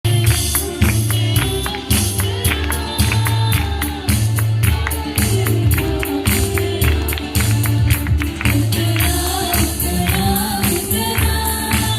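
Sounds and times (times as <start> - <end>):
gospel music with tambourine and bass: 0.0 - 11.9
voices singing: 0.1 - 11.9.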